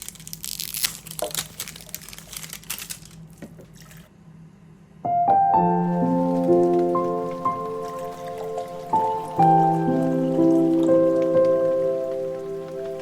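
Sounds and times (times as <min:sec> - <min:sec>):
scattered clicks and crackles: 0:00.0 - 0:03.3
soft piano music: 0:05.0 - 0:13.0.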